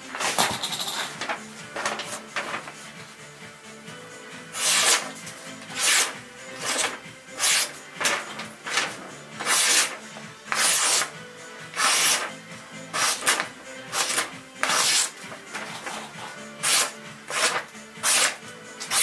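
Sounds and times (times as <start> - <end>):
faint background music: 0.0 - 19.0
knife rasping through material: 4.5 - 11.1, 11.7 - 12.3, 12.9 - 19.0.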